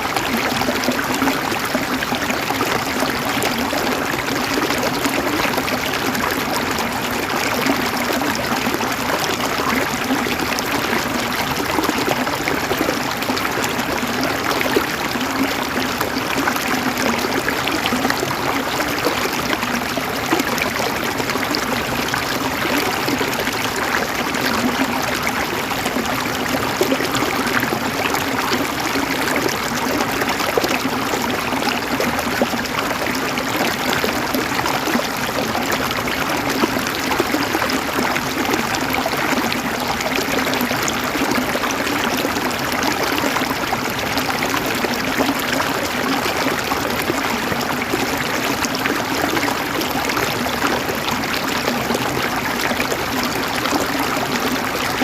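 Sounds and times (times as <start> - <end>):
river water over stones: 0.0 - 55.0.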